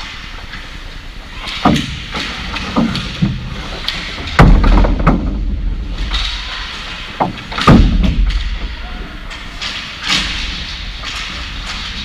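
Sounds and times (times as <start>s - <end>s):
sharp impact thuds: 7.2s - 8.7s.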